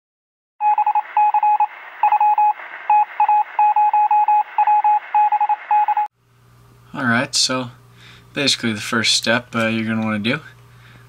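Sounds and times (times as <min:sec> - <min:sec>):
morse code beeps: 0:00.6 - 0:06.1
radio hiss: 0:01.0 - 0:03.8.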